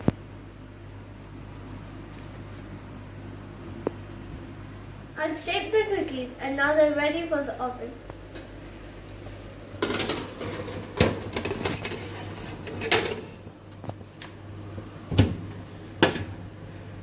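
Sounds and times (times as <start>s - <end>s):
oven door and tray clunks: 9.8s - 14.4s, 15.0s - 16.4s.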